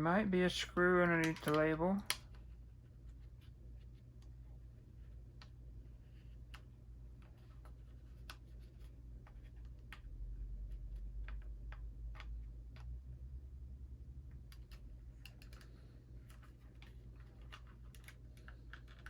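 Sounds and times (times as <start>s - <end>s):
steady low hum: 0.0s - 19.0s
plastic housing clicks: 1.2s - 2.2s.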